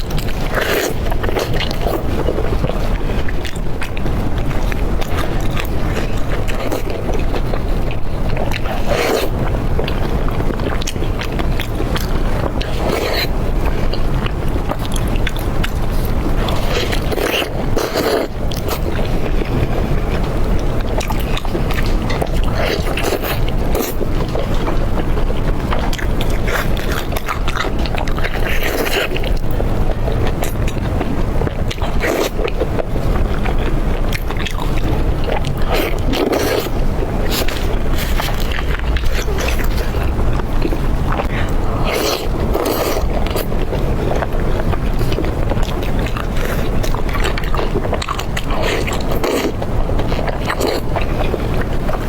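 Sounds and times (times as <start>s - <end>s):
chewing and crunching: 0.0s - 52.0s
low rumble: 32.4s - 52.0s.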